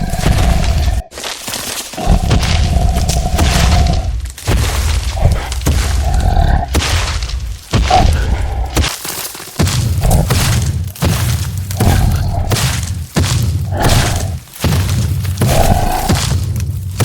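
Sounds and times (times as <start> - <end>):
deep booms and crashing thuds: 2.1 - 8.9, 9.6 - 17.0.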